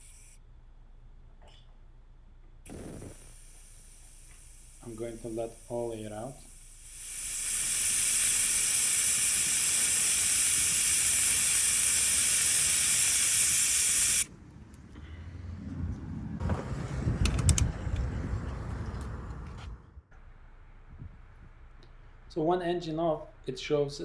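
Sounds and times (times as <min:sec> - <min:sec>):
pressurised gas hissing: 0:02.7 - 0:14.3
low rumbling: 0:14.3 - 0:22.3.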